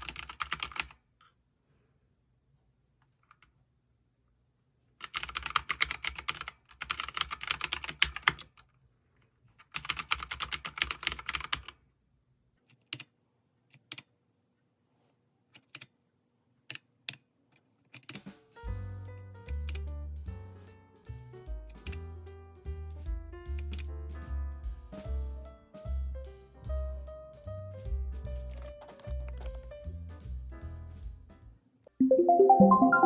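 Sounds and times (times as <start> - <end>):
mechanical keyboard typing: 0.0 - 1.0, 5.0 - 8.6, 9.6 - 11.8, 17.9 - 18.2, 19.5 - 19.9, 21.7 - 22.1, 23.6 - 23.9
music: 18.2 - 33.0.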